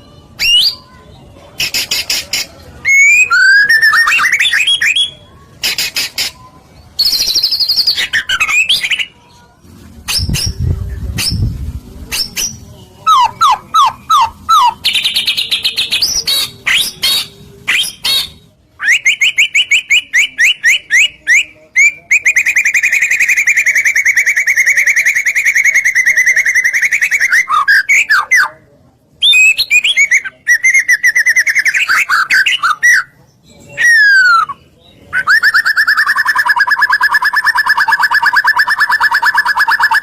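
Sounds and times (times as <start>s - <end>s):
rapid bird trill: 33.8s - 40.0s.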